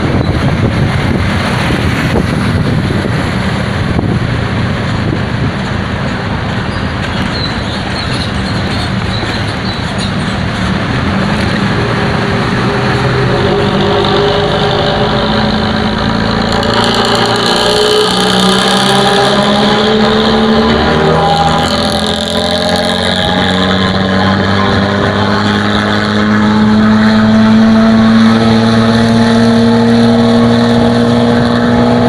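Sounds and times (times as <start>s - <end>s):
bus engine rumbling: 0.0s - 32.0s
engine note rising in pitch: 10.7s - 32.0s.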